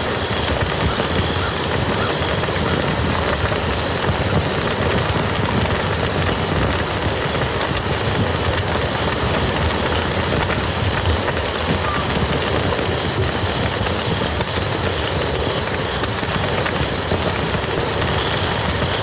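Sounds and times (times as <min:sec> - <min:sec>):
campfire crackling: 0:00.0 - 0:19.0.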